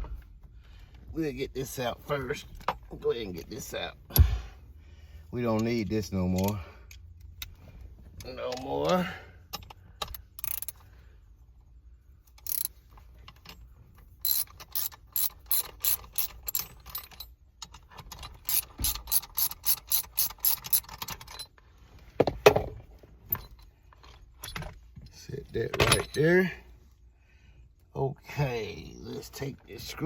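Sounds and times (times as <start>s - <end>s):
socket ratchet clicking: 9.7s - 10.8s, 12.3s - 12.8s, 14.2s - 17.2s, 18.1s - 21.5s.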